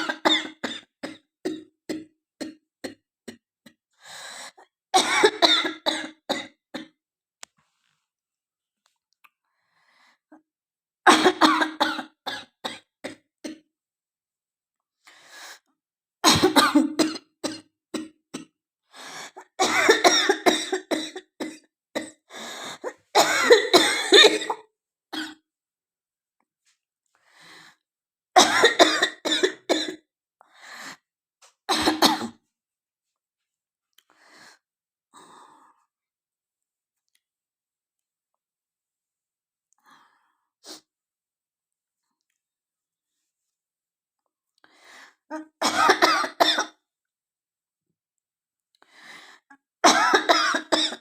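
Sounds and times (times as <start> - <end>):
woman coughing: 0.0 - 2.0, 5.0 - 6.5, 11.1 - 12.8, 16.3 - 18.1, 19.6 - 22.1, 23.2 - 24.6, 28.4 - 30.0, 31.7 - 32.3, 45.3 - 46.8, 49.8 - 51.0.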